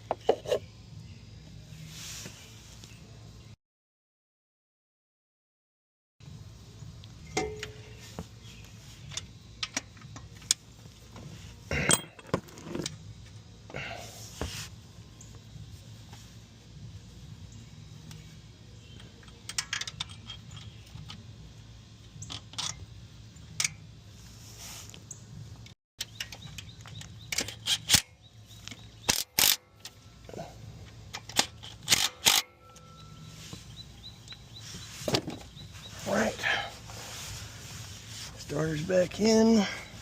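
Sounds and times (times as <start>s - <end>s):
low shop hum: 6.2s - 40.0s
metal tools clinking: 11.7s - 13.0s, 19.0s - 21.2s, 31.0s - 33.4s.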